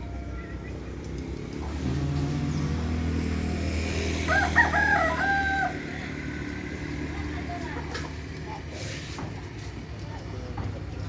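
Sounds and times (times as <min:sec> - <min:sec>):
rooster crowing: 0:04.2 - 0:06.1.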